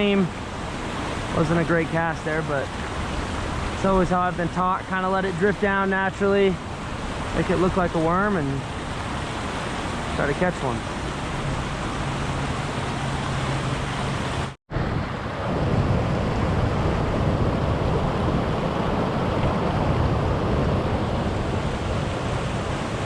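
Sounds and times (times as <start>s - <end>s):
creek rushing over rocks: 0.0s - 14.6s.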